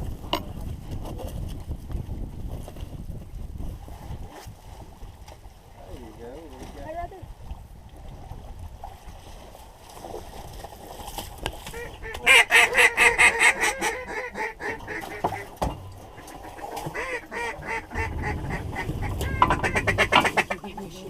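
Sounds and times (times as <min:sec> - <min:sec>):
duck quacking: 0:11.7 - 0:15.5, 0:16.2 - 0:20.7.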